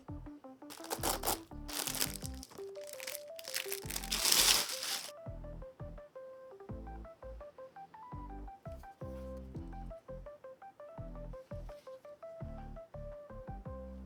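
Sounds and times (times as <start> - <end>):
background music with low beat: 0.0 - 3.2, 3.9 - 14.0
packaging crinkling: 0.7 - 5.1.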